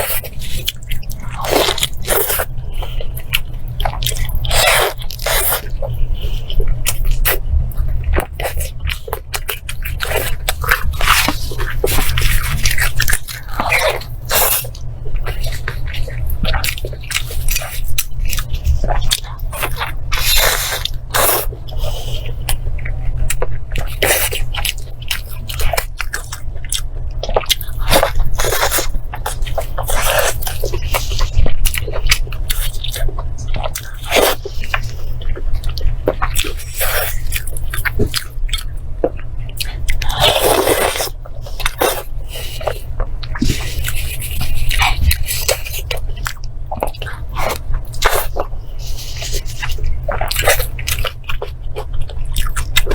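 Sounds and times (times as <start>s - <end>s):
biting and chewing meat: 0.0s - 52.9s
steady low hum: 0.0s - 52.9s.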